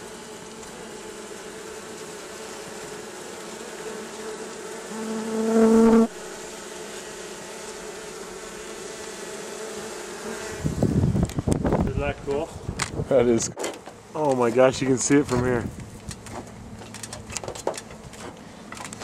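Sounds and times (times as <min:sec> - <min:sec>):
bee buzzing close: 0:00.0 - 0:13.1
bee colony buzzing: 0:00.0 - 0:19.0.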